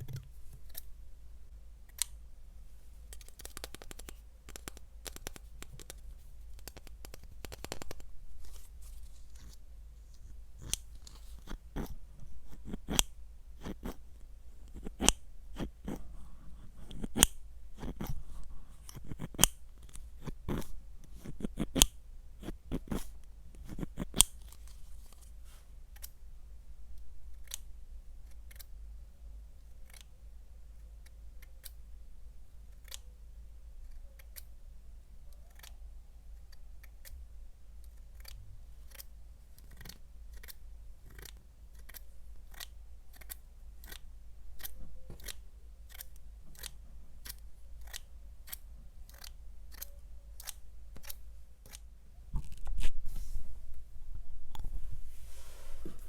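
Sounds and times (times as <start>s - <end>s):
sharp clicks and taps: 3.1s - 8.1s.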